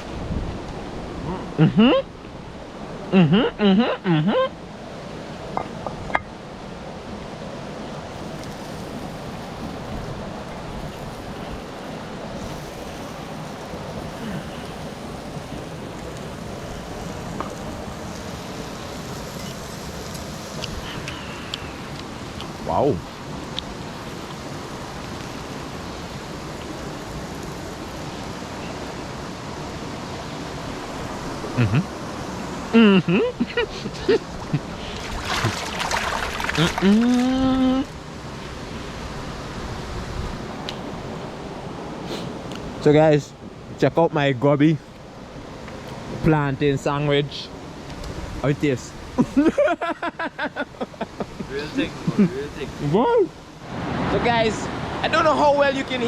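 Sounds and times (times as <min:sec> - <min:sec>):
river water rushing: 0:00.0 - 0:56.0
wavering vocal calls: 0:03.1 - 0:04.6.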